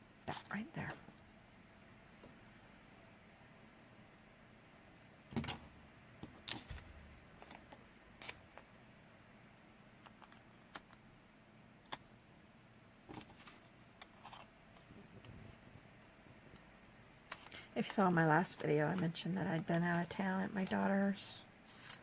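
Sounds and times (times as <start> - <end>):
paper rustling: 21.7 - 22.0.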